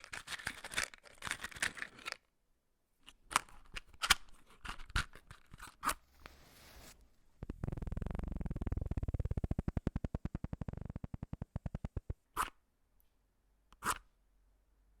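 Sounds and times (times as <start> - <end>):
matchbox clicks and rustles: 0.0 - 2.3, 3.1 - 6.0
faint match hiss: 5.9 - 7.7.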